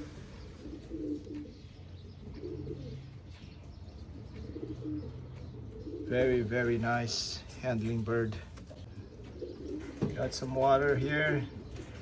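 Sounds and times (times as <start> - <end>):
pigeons cooing: 0.0 - 7.6, 8.4 - 12.0.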